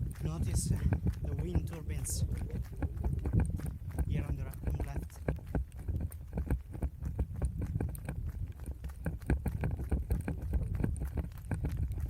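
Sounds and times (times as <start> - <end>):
running footsteps: 0.0 - 12.0
steady low rumble: 0.0 - 12.0.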